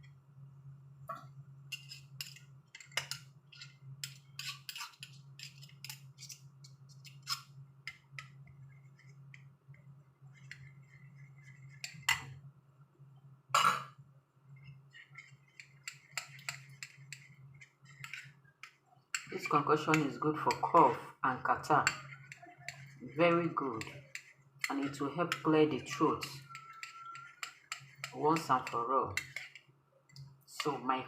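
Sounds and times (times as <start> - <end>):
steady low hum: 0.0 - 31.0
spoon clinking against a dish: 21.8 - 29.6.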